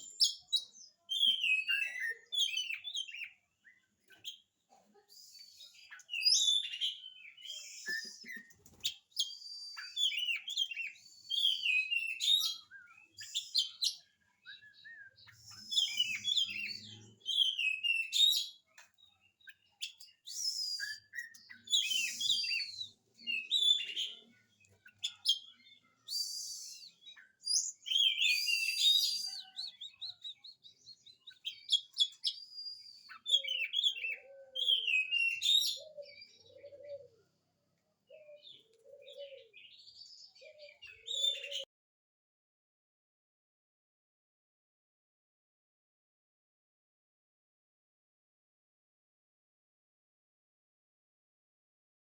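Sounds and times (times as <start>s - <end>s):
bird singing: 0.0s - 4.5s, 5.6s - 37.3s, 38.1s - 41.7s.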